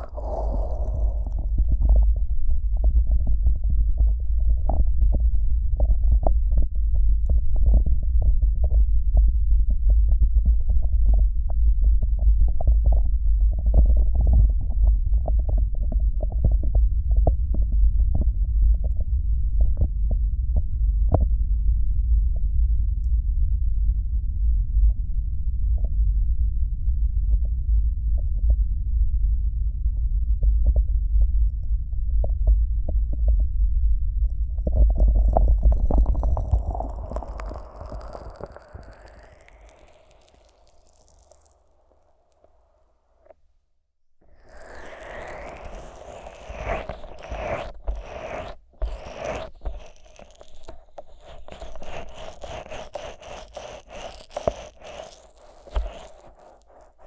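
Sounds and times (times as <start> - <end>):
fingers rubbing microphone: 0.0 - 2.2, 34.4 - 43.4, 44.3 - 57.0
sticky clicks and squelching: 34.7 - 42.8, 44.4 - 57.0.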